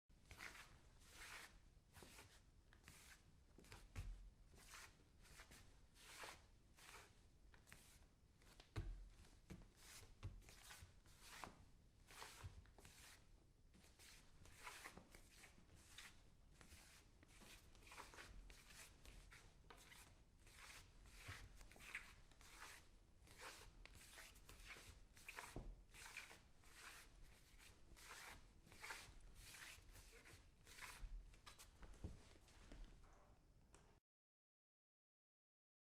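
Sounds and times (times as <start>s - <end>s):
bare feet scuffing on wooden floor: 30.7s - 32.9s.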